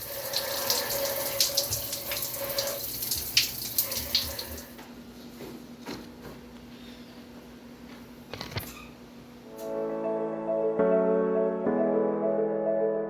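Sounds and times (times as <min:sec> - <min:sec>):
water running from a tap: 0:00.0 - 0:04.8.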